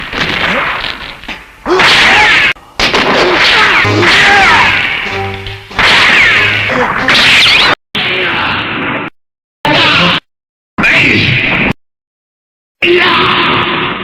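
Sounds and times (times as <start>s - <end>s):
monster roars and shrieks: 3.2s - 4.9s.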